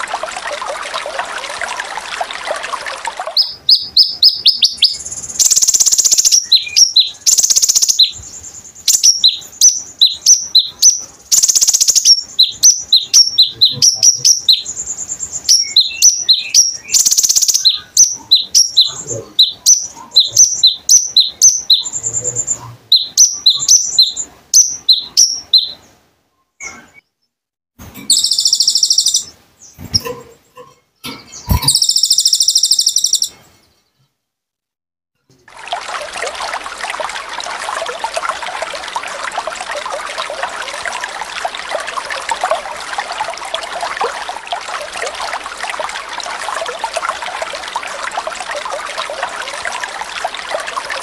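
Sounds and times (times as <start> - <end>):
high sharp bird chirps: 3.3 - 25.9, 28.1 - 30.1, 31.2 - 33.4
harsh buzzy bird trills: 28.1 - 33.4.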